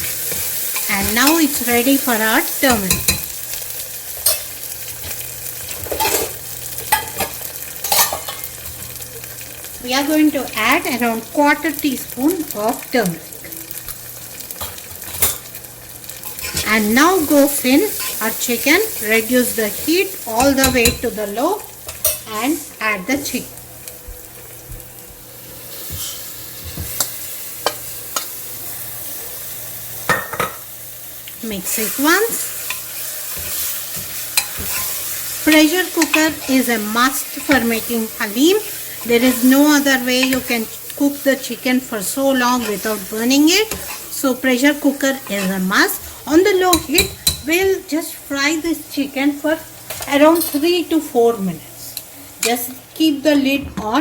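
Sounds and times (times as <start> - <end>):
onions sizzling in hot oil: 0.0 - 54.0
utensils clinking against pot: 2.6 - 3.4, 4.2 - 8.8, 14.6 - 15.6, 16.2 - 16.9, 17.9 - 21.2, 21.8 - 22.3, 32.1 - 36.7, 43.5 - 44.1, 45.0 - 47.7, 49.8 - 50.7
spoon scraping against pot: 32.4 - 36.7, 43.6 - 44.1, 45.0 - 47.6.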